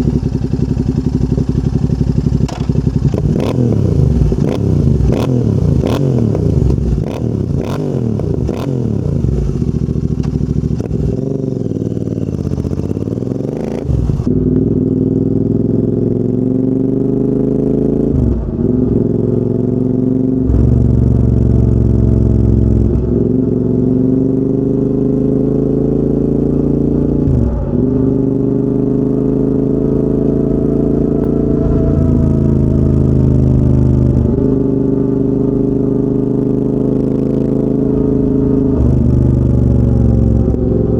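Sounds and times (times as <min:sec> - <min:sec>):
motorcycle engine: 0:00.0 - 0:40.9
exhaust cracks: 0:02.3 - 0:14.3.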